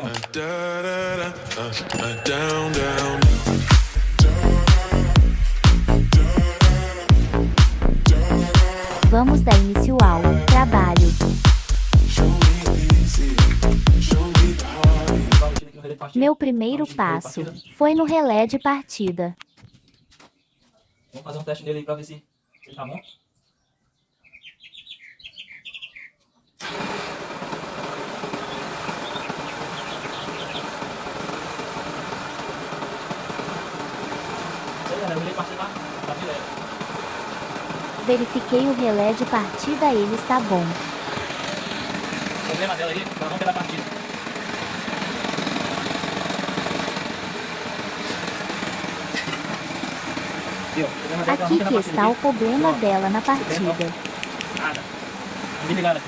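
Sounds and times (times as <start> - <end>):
loud steady motor noise: 2.7 - 15.6, 26.6 - 56.0
bird chirping: 15.8 - 26.6, 28.4 - 30.8.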